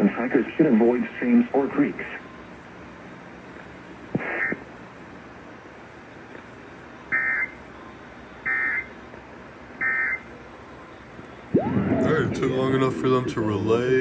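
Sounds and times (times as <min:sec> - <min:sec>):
radio hiss: 0:00.0 - 0:02.4, 0:04.1 - 0:04.7, 0:11.4 - 0:14.0
digital data warble bursts: 0:11.6 - 0:13.3.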